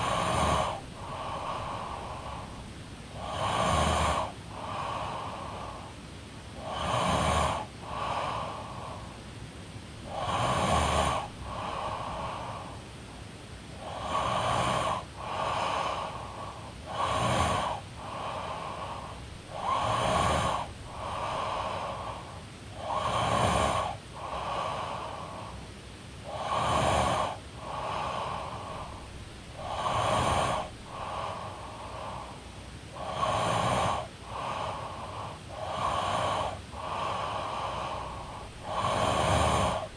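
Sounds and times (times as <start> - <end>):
woman snoring: 0.0 - 5.9, 6.6 - 9.1, 10.0 - 12.8, 13.7 - 25.6, 26.2 - 39.9.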